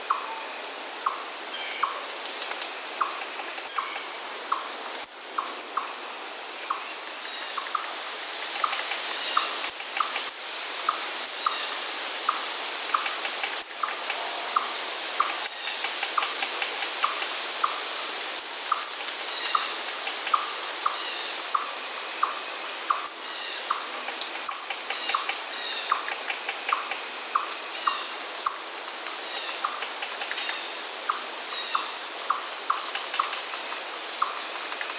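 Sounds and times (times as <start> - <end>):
crickets chirping: 0.0 - 34.9.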